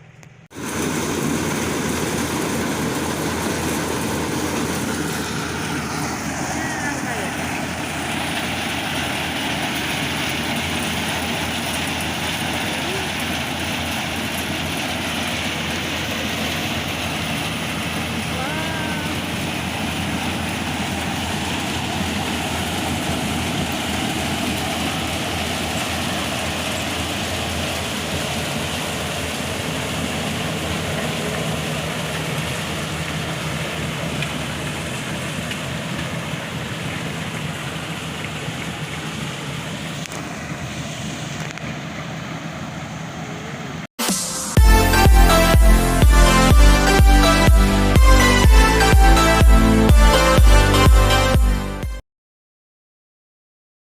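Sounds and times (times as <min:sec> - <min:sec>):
harvester machinery running: 0:00.0 - 0:52.0.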